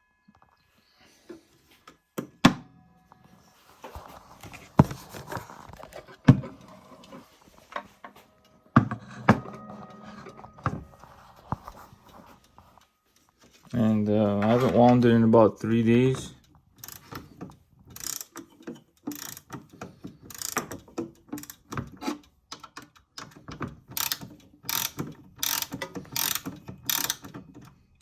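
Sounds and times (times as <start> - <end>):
clock ringing tone: 8.2 - 16.0
knocks and clunks of clock handling: 8.7 - 10.9, 16.8 - 27.6.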